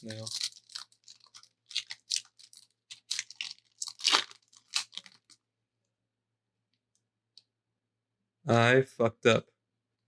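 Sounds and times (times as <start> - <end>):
foil wrapper crinkling and tearing: 0.0 - 5.4.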